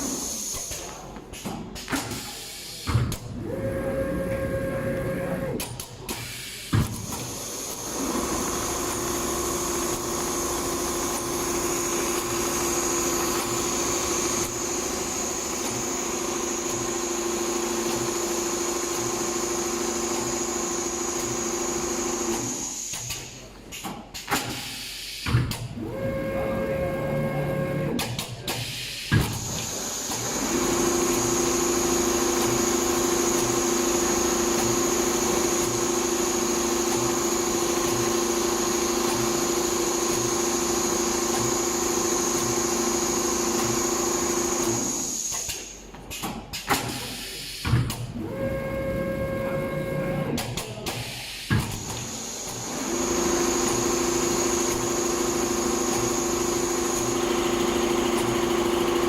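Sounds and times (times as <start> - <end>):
sewing machine running: 7.0 - 22.8, 30.2 - 45.2, 52.6 - 59.0
sharp machine clicks: 53.6 - 59.0.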